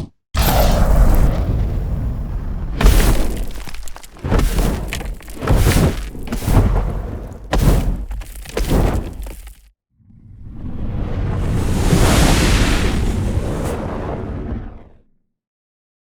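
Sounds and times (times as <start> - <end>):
fire whooshes and blasts: 2.5 - 9.6, 10.5 - 14.9.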